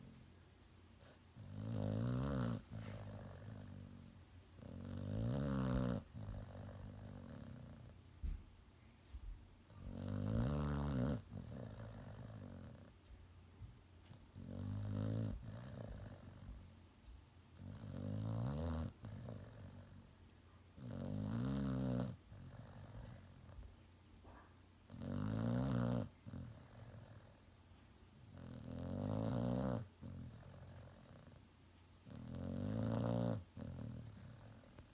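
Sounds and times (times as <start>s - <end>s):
quiet breaths: 0.0s - 34.9s
dog breathing quietly: 1.0s - 5.0s, 21.3s - 24.7s
dog snoring: 1.0s - 8.5s, 9.7s - 13.2s, 14.0s - 16.8s, 17.5s - 20.2s, 20.8s - 27.6s, 28.2s - 31.4s, 32.0s - 34.9s.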